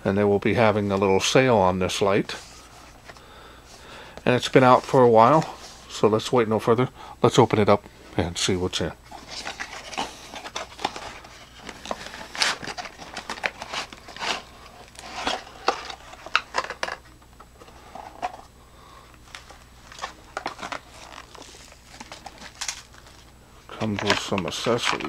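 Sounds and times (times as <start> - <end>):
packaging rustling and crinkling: 9.0 - 18.5, 19.2 - 25.0.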